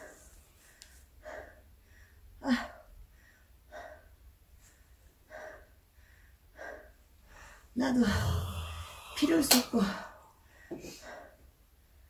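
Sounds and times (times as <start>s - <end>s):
person exhaling breathily: 8.0s - 10.3s.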